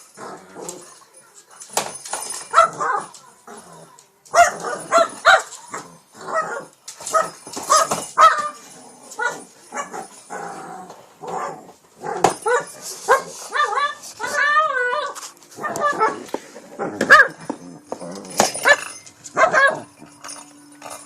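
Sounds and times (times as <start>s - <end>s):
dog barking yipping and whining: 2.5s - 3.1s, 4.3s - 10.4s, 11.2s - 16.2s, 16.9s - 17.5s, 18.5s - 20.1s.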